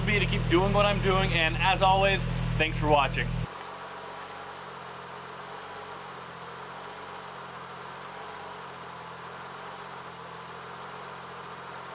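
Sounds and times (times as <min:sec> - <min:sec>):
car engine idling: 0:00.0 - 0:11.9.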